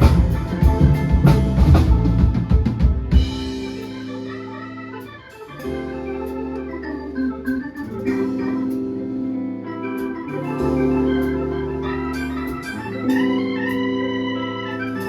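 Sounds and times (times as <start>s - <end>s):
deep bass line: 0.0s - 15.0s
organ-like keyboard chords: 0.0s - 15.0s.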